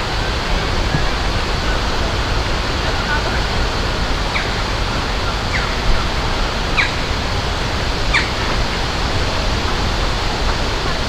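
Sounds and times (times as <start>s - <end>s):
rushing water: 0.0s - 11.0s
bird chirping: 8.1s - 8.6s.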